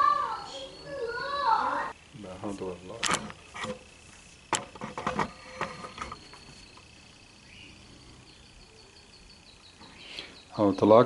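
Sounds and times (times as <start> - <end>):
faint steady high tone: 0.0 - 2.8, 5.4 - 11.0.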